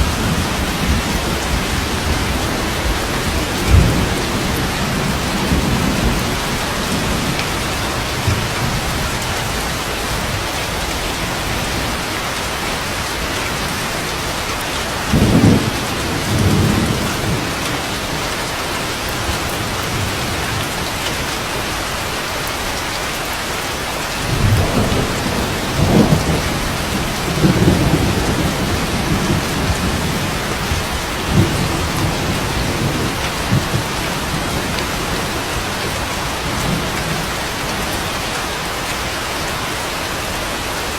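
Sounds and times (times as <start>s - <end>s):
thunder rumbling: 0.0s - 12.2s, 14.9s - 20.9s, 24.2s - 38.7s
steady rain: 0.0s - 40.9s.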